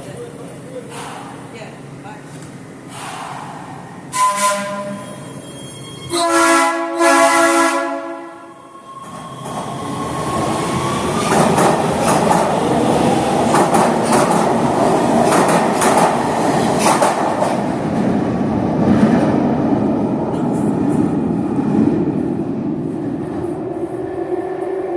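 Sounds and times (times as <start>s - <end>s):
train running noise: 0.4s - 7.2s, 9.0s - 24.9s
train horn blasts: 4.1s - 5.2s, 6.1s - 8.5s.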